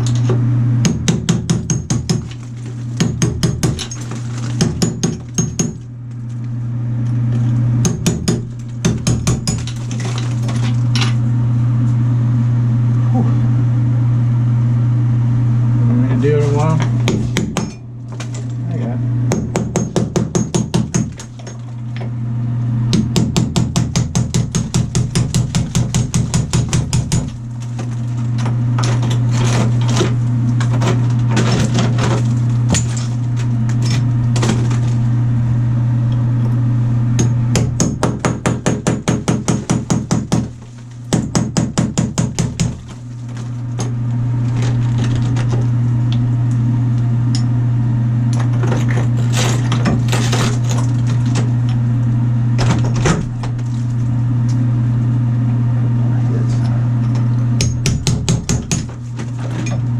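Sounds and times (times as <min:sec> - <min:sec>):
electric chipping hammer blows: 0:22.8 - 0:35.8, 0:36.4 - 0:47.5, 0:48.2 - 0:54.8.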